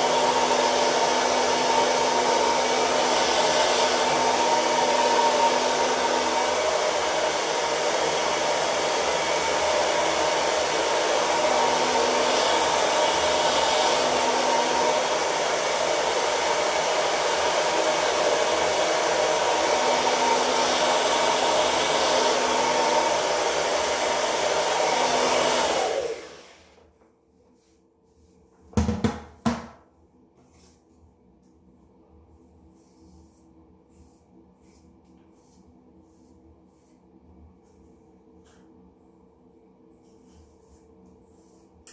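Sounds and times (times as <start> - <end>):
hair dryer whining: 0.0 - 27.0.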